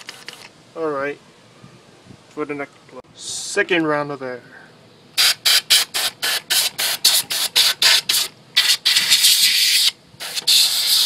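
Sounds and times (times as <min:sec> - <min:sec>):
pressurised air hissing from nozzle: 0:05.2 - 0:11.0.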